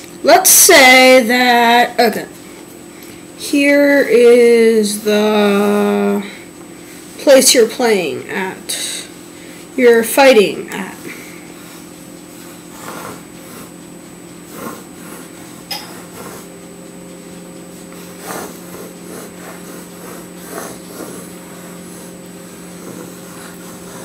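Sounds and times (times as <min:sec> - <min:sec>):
steady electrical hum: 0:00.0 - 0:24.0
felt-tip marker scratching: 0:12.4 - 0:13.7, 0:14.5 - 0:16.5, 0:17.9 - 0:24.0.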